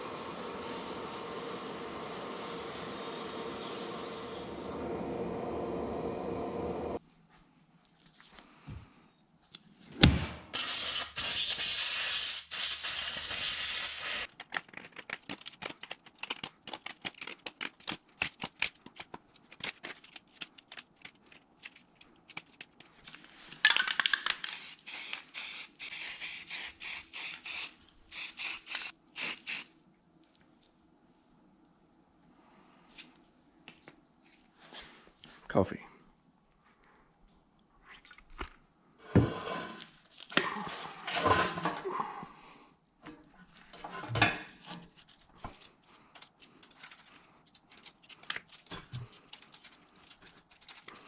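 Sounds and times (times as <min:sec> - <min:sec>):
pressurised spray hissing: 0:00.0 - 0:07.0, 0:24.5 - 0:29.7.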